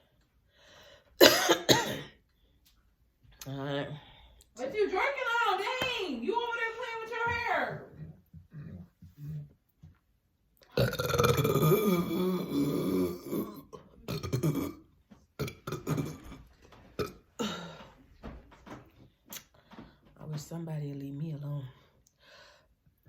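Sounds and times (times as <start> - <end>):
woman burping: 1.2 - 2.2, 10.7 - 17.8.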